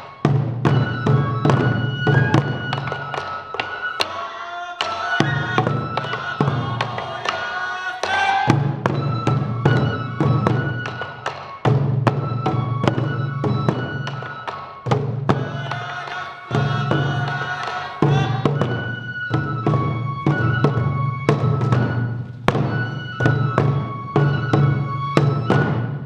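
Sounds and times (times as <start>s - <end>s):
taiko drums: 0.0s - 4.2s, 4.8s - 26.0s
bamboo flute melody: 0.0s - 26.0s.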